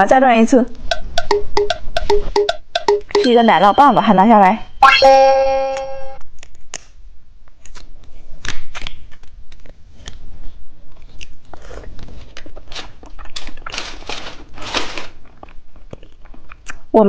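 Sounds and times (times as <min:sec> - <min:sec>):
musical chime: 0:01.6 - 0:06.2
plastic wrapper crinkling: 0:12.4 - 0:15.6.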